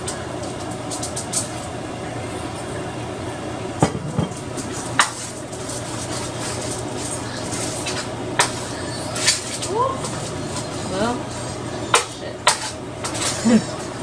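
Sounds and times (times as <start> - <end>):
steady low hum: 0.0 - 14.0
spoon scraping baking dish: 4.6 - 14.0.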